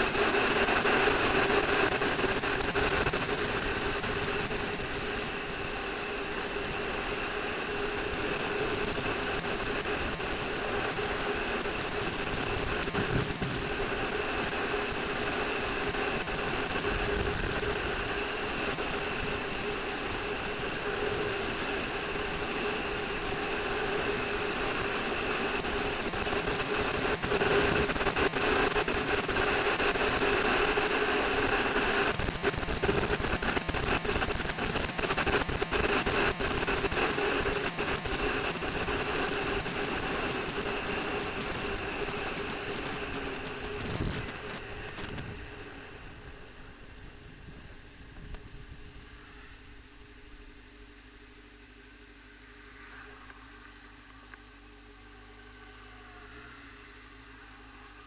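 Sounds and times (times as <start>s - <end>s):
wind noise: 0.0s - 49.8s
vehicle engine droning: 51.6s - 58.0s.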